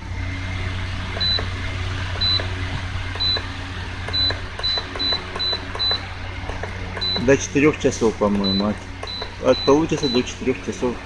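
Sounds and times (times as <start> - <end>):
fan motor humming: 0.0 - 11.0
short high beeps: 7.0 - 7.3.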